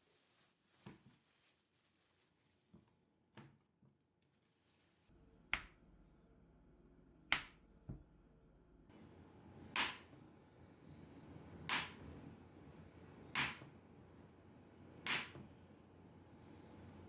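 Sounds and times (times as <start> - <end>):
faint room hiss: 8.7 - 17.0.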